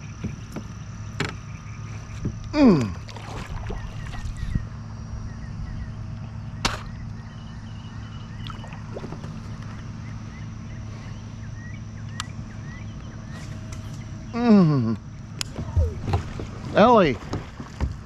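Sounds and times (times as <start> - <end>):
steady low hum: 0.0 - 18.0
faint bird chirps: 3.7 - 14.5.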